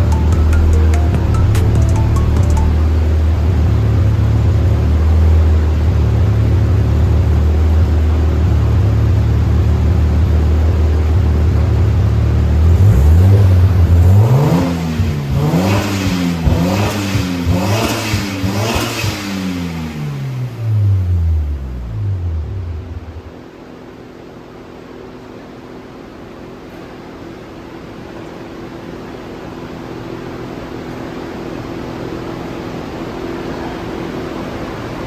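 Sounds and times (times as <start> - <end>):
car engine revving: 0.0 - 23.3.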